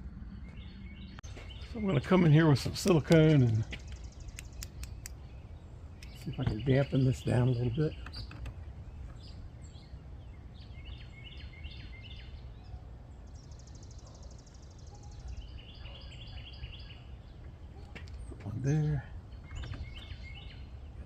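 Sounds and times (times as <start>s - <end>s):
low background rumble: 0.0s - 15.8s
birds chirping: 0.0s - 21.0s.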